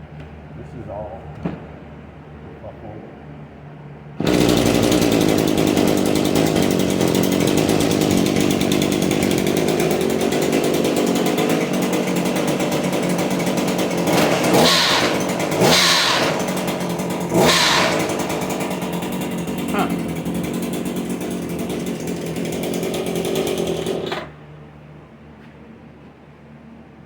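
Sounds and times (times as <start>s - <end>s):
saw cutting head grinding noise: 4.2s - 24.4s
small two-stroke engine running: 4.2s - 24.8s.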